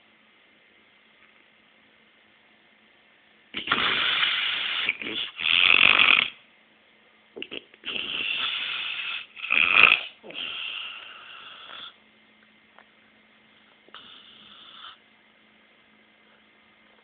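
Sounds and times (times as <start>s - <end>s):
man snoring: 3.6s - 6.4s, 7.8s - 12.0s.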